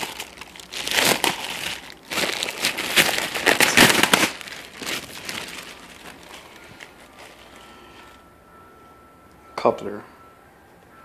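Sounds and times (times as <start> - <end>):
packaging crinkling: 0.0 - 8.2.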